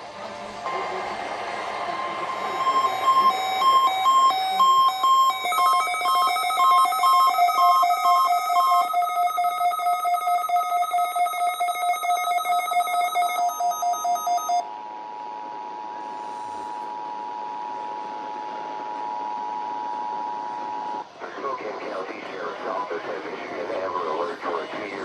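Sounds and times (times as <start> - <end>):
fast-pulsing electronic beeping: 2.2 - 14.6
steady two-note alert tone: 2.3 - 14.6.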